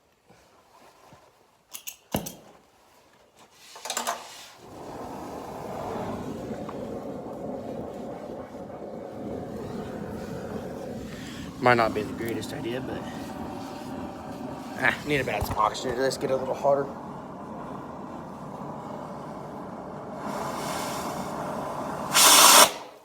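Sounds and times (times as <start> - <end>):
torch flame hissing: 4.2 - 23.0
gas burst: 4.5 - 23.0
torch igniter clicks: 20.3 - 23.0.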